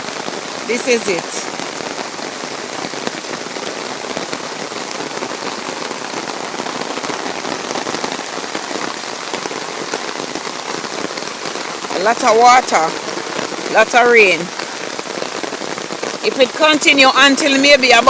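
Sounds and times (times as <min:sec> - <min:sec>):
heavy rain falling: 0:00.0 - 0:18.0.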